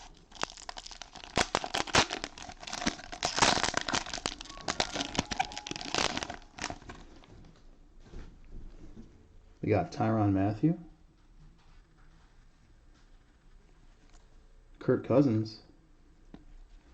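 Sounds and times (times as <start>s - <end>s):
cellophane wrappers crinkling and tearing: 0.0s - 7.3s.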